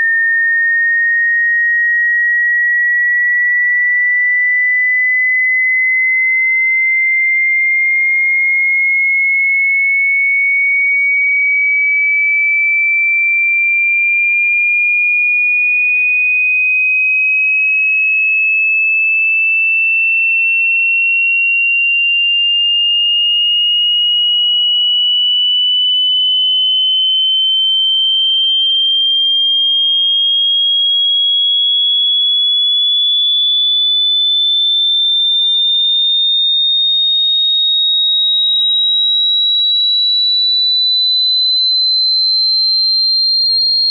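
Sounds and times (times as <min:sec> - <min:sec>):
rising sine test tone: 0:00.0 - 0:08.6, 0:21.8 - 0:43.9.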